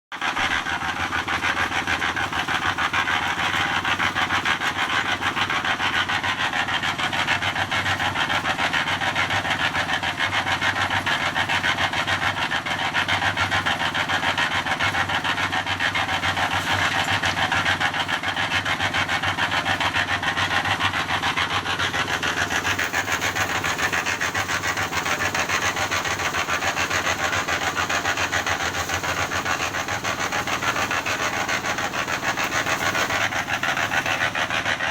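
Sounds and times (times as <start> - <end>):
machine rasping and rubbing: 15.5 - 34.9.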